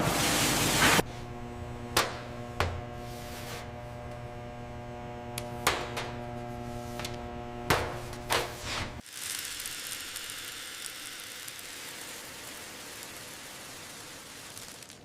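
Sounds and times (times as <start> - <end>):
electronic hum of held tones: 1.0 - 8.3.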